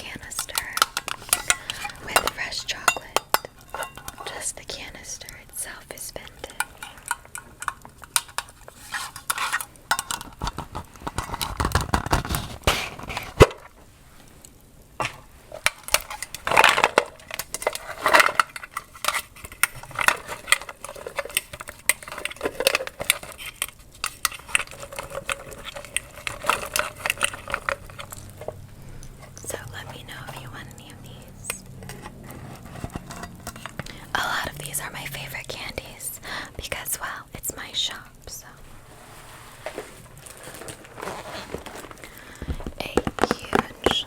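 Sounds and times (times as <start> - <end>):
hands rummaging through candy: 15.6 - 44.0.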